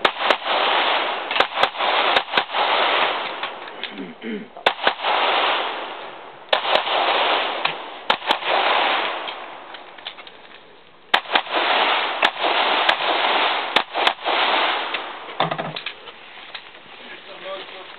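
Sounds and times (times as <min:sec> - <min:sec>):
pistol shots with echo: 0:00.0 - 0:03.6, 0:04.6 - 0:09.8, 0:11.1 - 0:15.4.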